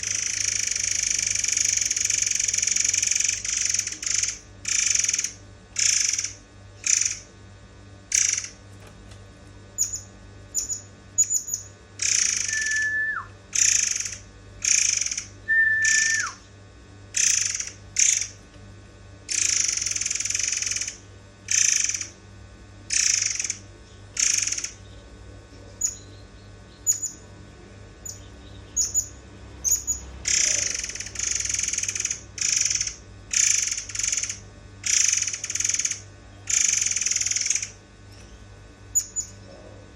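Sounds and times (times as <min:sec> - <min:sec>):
bird rasping calls: 0:09.8 - 0:16.4, 0:17.2 - 0:18.4, 0:22.9 - 0:23.6, 0:24.2 - 0:24.8, 0:26.7 - 0:27.2, 0:28.0 - 0:37.8.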